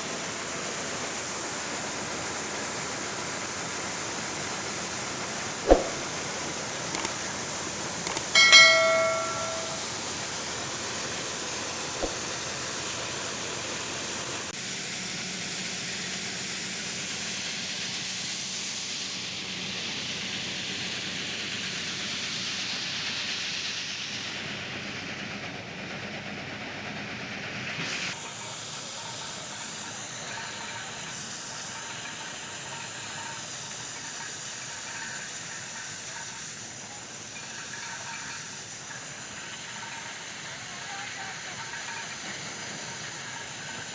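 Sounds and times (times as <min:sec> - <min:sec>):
short metallic ring: 0:05.7 - 0:06.1, 0:08.1 - 0:10.0.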